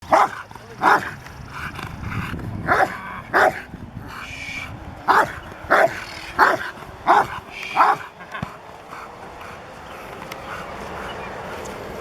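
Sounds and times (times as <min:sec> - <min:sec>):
dog barking: 0:00.0 - 0:01.2, 0:02.6 - 0:03.7, 0:05.1 - 0:08.1.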